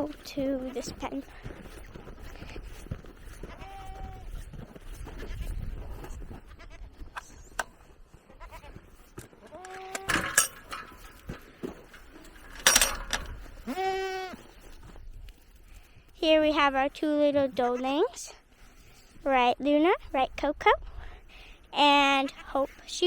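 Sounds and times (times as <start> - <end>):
goats bleating: 3.5 - 4.3, 8.2 - 8.8, 9.4 - 10.1, 13.6 - 14.4.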